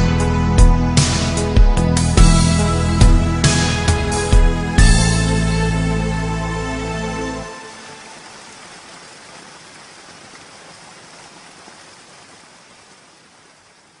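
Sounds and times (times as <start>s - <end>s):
soft steady hiss: 7.3s - 14.0s.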